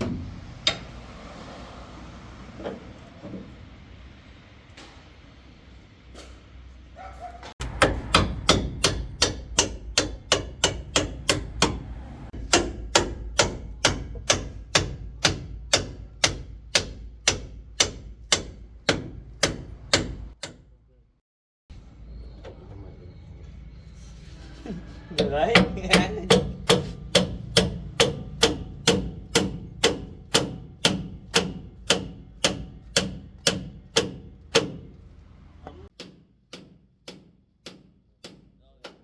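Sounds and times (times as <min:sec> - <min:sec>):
hammer striking metal: 0:07.6 - 0:20.7, 0:25.1 - 0:35.0.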